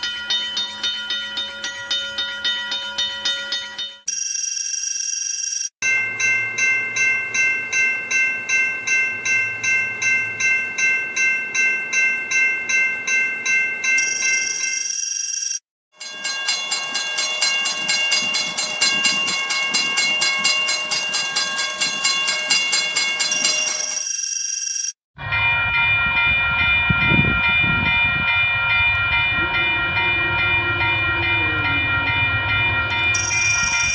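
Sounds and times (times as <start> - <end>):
railroad crossing bells ringing: 0.0 - 33.9
train rumbling past: 16.2 - 24.0, 25.2 - 33.9.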